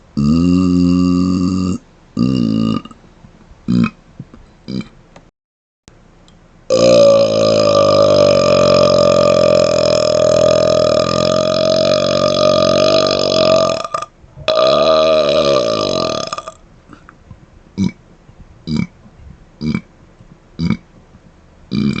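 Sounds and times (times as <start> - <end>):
man burping: 0.2 - 3.0, 3.7 - 4.0, 4.7 - 5.0, 6.7 - 17.1, 17.8 - 18.0, 18.7 - 19.0, 19.6 - 19.9, 20.6 - 20.8, 21.7 - 22.0.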